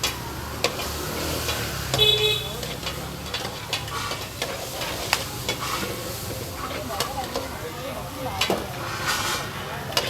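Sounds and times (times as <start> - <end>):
food sizzling in a frying pan: 0.0 - 10.0
metal spatula scraping a pan: 0.0 - 10.0
short vehicle horn: 2.0 - 2.6.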